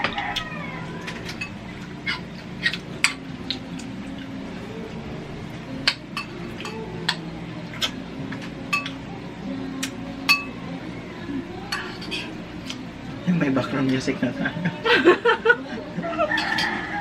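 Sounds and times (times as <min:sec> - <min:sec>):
cutlery clinking on plates: 0:08.3 - 0:09.0, 0:16.3 - 0:16.8.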